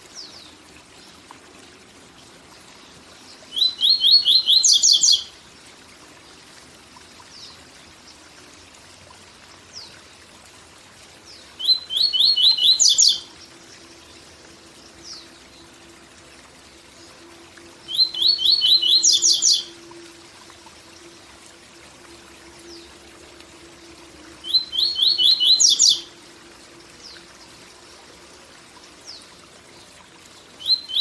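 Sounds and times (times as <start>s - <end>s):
bird singing: 3.2s - 5.3s, 11.3s - 13.5s, 17.8s - 20.0s, 24.4s - 26.2s, 30.6s - 31.0s.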